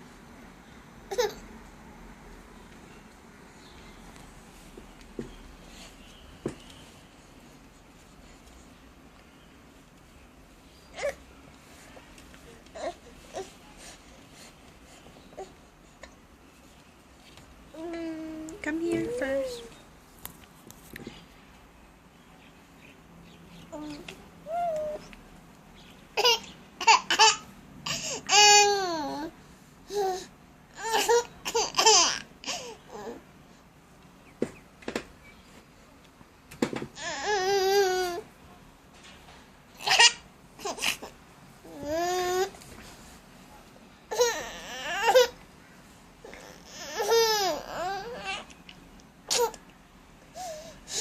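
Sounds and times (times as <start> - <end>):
baby babbling and squealing: 23.7 - 25.1.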